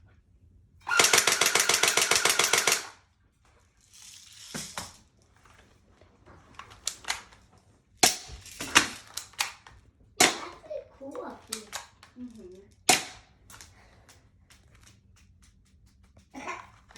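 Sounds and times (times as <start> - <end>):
airsoft gun automatic burst: 0.9 - 3.0.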